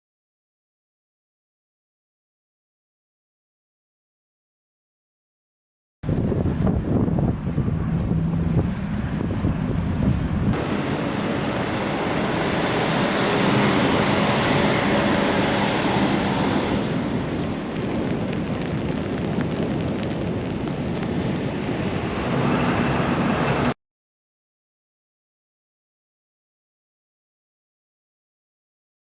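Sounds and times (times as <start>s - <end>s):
blizzard wind on microphone: 6.0s - 23.8s.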